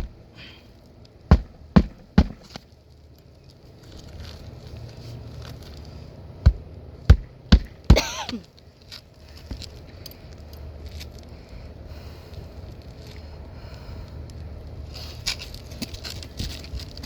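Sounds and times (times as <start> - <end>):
hammer blows on roof: 1.3 - 2.6, 6.5 - 8.4
shingles being pulled: 1.3 - 2.7.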